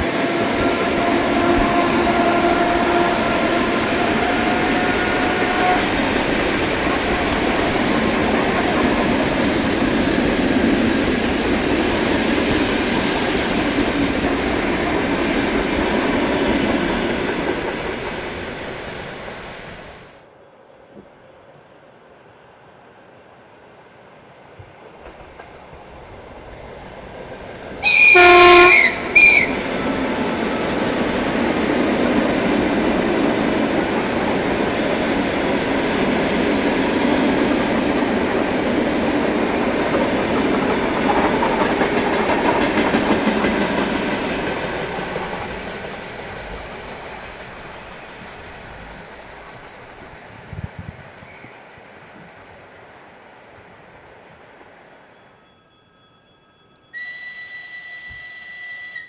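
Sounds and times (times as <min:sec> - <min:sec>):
train horn blast: 0:00.0 - 0:08.8, 0:27.8 - 0:30.2, 0:57.0 - 0:59.0
train rumble and wheel clatter: 0:00.0 - 0:55.4.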